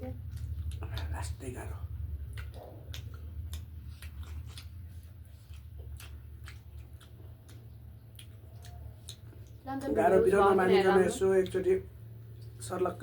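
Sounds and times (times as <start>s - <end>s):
steady low hum: 0.0s - 13.0s
wet chewing and mouth smacks: 0.1s - 9.6s.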